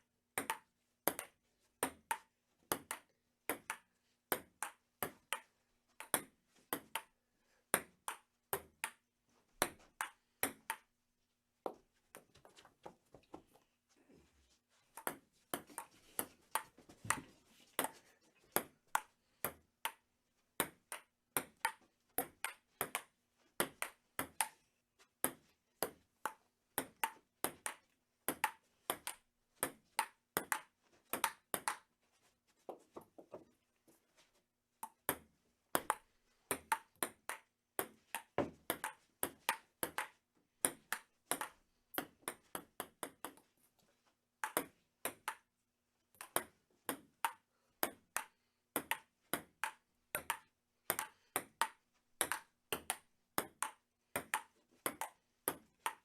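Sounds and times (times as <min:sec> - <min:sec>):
ping-pong ball hitting paddles: 0:00.4 - 0:07.1, 0:07.7 - 0:10.9, 0:15.0 - 0:17.2, 0:18.6 - 0:24.6, 0:25.2 - 0:31.9, 0:34.8 - 0:43.5, 0:44.4 - 0:45.5, 0:46.2 - 0:56.0.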